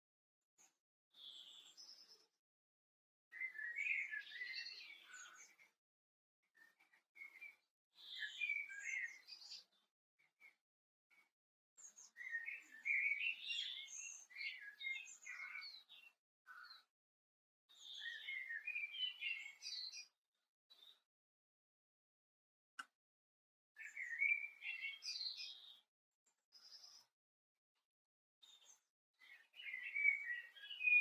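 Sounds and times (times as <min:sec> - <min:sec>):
songbird singing: 0:03.4 - 0:05.6, 0:08.1 - 0:09.5, 0:12.0 - 0:16.0, 0:17.9 - 0:20.0, 0:23.8 - 0:25.6, 0:29.3 - 0:31.0.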